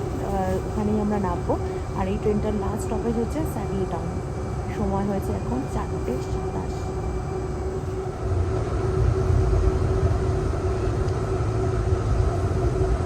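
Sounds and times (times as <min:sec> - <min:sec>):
light-rail train rumble: 0:00.0 - 0:13.0
train hum: 0:00.0 - 0:13.0.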